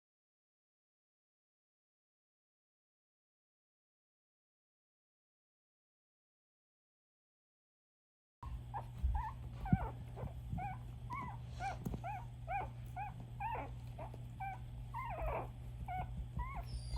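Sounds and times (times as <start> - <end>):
puppies whimpering and squeaking: 8.4 - 16.9
steady low hum: 8.4 - 16.9.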